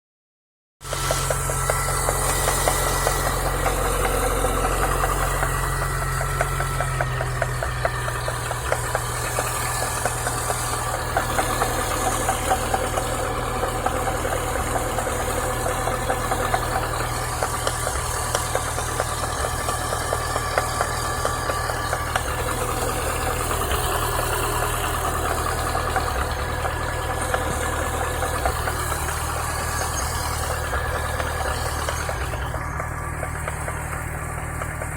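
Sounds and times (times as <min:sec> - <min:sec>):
car engine idling: 0:00.8 - 0:34.9
rapid steady knocking: 0:00.8 - 0:34.9.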